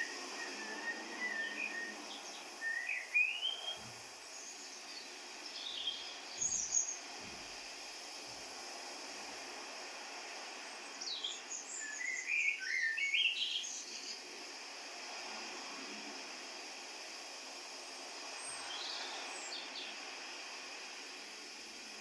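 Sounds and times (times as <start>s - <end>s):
songbirds chirping: 0.0s - 8.2s, 9.8s - 14.8s, 18.2s - 21.2s
steady hiss: 0.0s - 22.0s.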